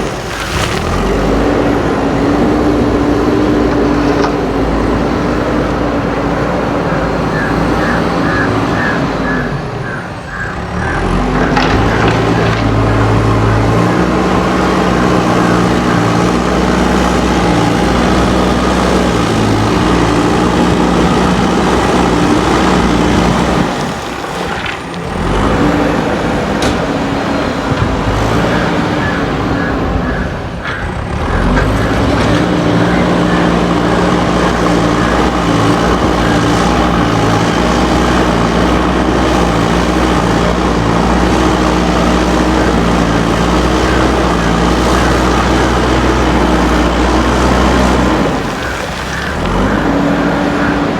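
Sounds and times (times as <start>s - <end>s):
backhoe diesel engine under load: 0.0s - 50.9s.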